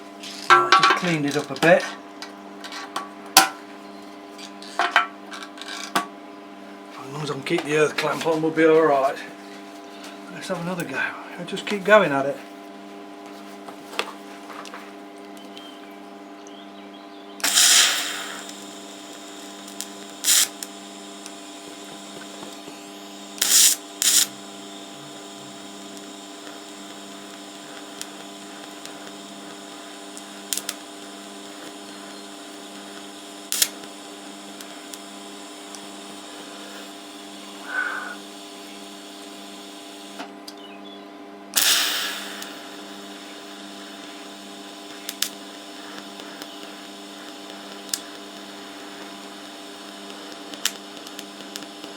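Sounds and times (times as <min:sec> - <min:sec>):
welding set electrical hum: 0:00.0 - 0:51.9
welding arc bursts: 0:17.4 - 0:40.6, 0:41.5 - 0:51.9.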